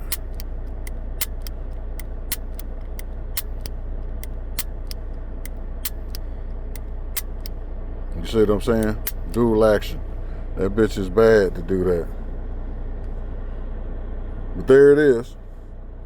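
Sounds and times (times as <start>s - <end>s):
pistol hammer clicking: 0.0s - 7.6s, 8.8s - 9.4s
low hum: 0.0s - 16.0s.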